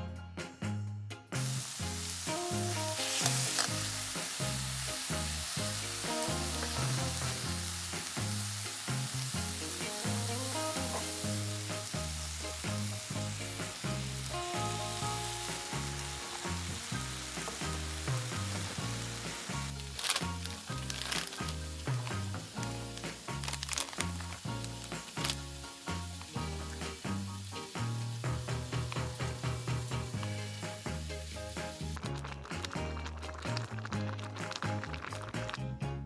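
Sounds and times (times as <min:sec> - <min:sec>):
background music with bass: 0:00.0 - 0:36.0
food sizzling in a pan: 0:01.4 - 0:35.7.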